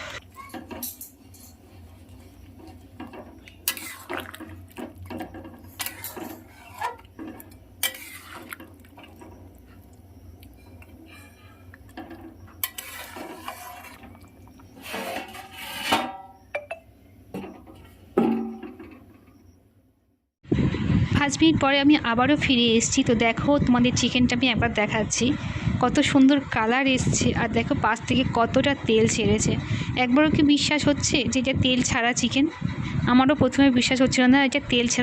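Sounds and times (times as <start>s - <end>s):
utensil scraping and clinking on pan: 0.6s - 9.6s, 10.6s - 16.4s
utensil stirring curry in metal pan: 1.6s - 15.9s.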